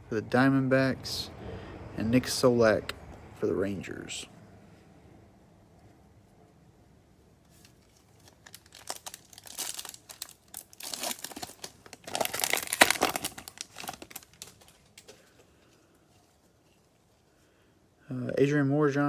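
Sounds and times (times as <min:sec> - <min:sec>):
card pack wrapper crinkling and tearing: 0:07.6 - 0:15.2.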